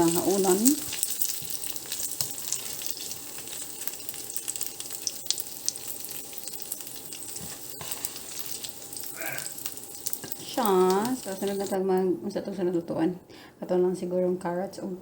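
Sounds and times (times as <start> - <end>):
dumplings sizzling in frying pan: 0.0 - 11.9.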